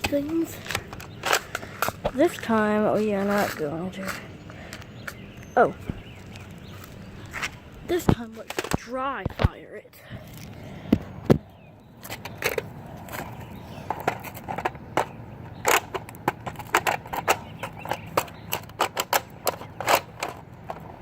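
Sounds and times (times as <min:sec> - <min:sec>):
plastic toy blaster clicks and clunks: 0:08.4 - 0:08.9, 0:13.9 - 0:20.8.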